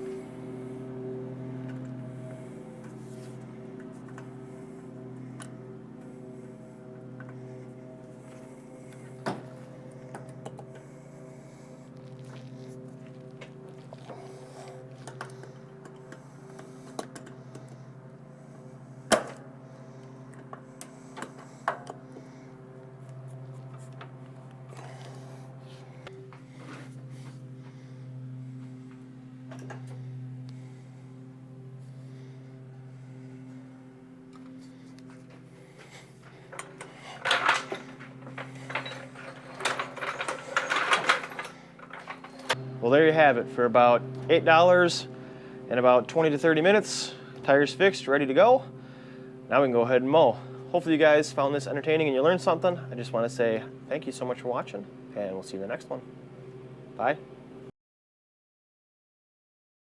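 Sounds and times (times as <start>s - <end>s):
steady low hum: 0.0s - 57.7s
metal clicks and knocks: 36.5s - 42.6s.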